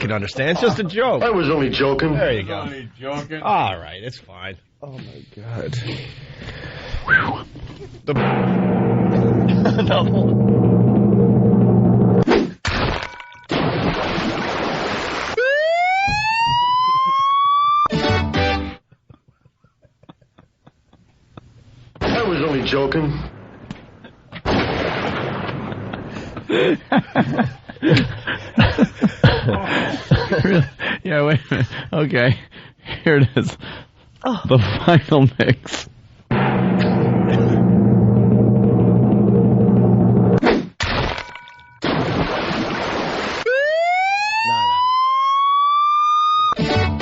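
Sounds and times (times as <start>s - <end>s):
men laughing: 0.4s - 2.8s, 9.3s - 10.6s, 16.3s - 17.6s, 18.8s - 21.5s, 25.5s - 32.4s, 34.3s - 35.8s, 37.1s - 37.8s
drum roll: 8.2s - 12.2s, 36.3s - 40.4s
rising siren-like tone: 10.3s - 12.2s, 15.4s - 17.9s, 36.4s - 40.4s, 43.5s - 46.6s.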